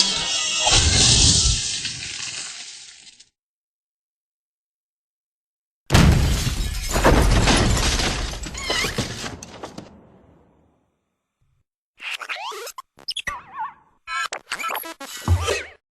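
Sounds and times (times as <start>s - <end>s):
cartoon crash smash: 0.6s - 2.4s, 5.9s - 8.6s
shattering clattering debris: 5.9s - 10.0s.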